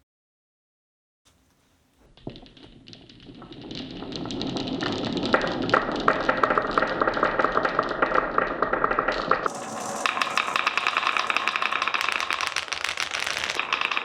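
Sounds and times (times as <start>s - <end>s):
marbles rolling down wooden run: 1.5s - 14.0s.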